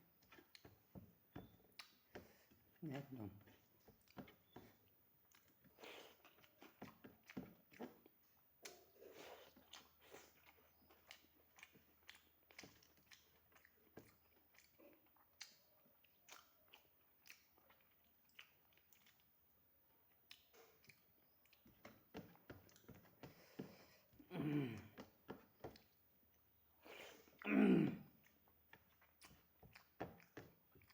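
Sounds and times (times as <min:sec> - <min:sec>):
person chewing food: 0:00.1 - 0:02.8, 0:03.4 - 0:30.9.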